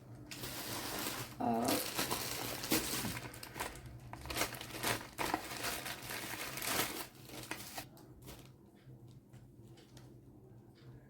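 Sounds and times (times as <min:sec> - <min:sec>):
packaging crinkling: 0:00.2 - 0:08.5.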